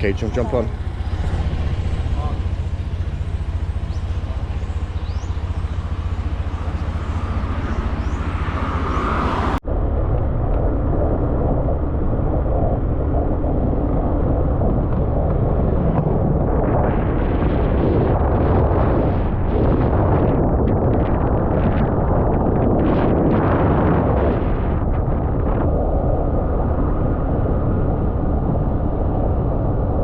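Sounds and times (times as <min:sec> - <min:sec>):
motorbike engine running: 0:00.0 - 0:08.9
road and wind noise: 0:00.0 - 0:30.0.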